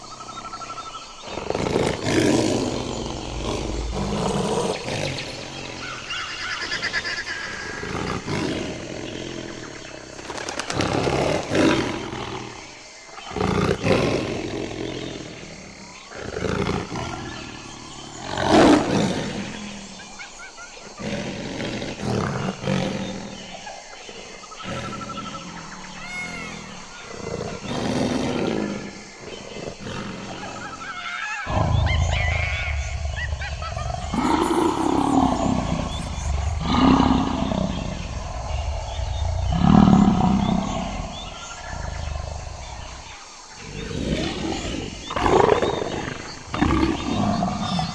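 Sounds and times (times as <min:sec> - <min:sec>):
tiger roaring and growling: 0:00.0 - 0:06.2, 0:06.8 - 0:20.0, 0:21.0 - 0:47.9.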